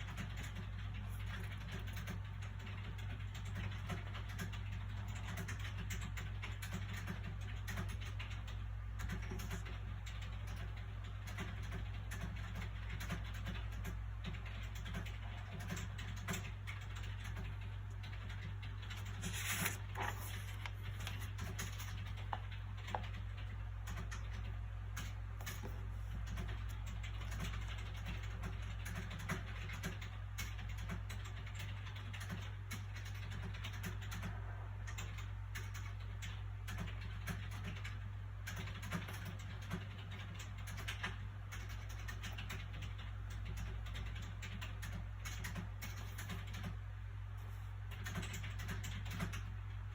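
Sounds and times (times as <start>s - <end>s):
low background hum: 0.0s - 49.9s
book pages rustling: 19.0s - 23.0s.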